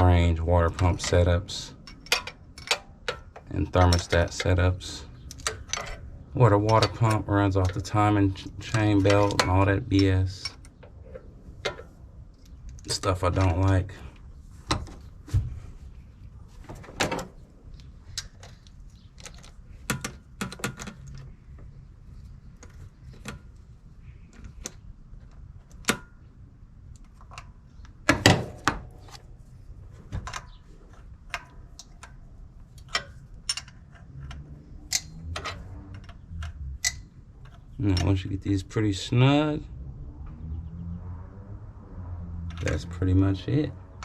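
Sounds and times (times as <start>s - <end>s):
hand tools clicking on metal bolts: 0.0s - 13.9s, 32.8s - 38.3s.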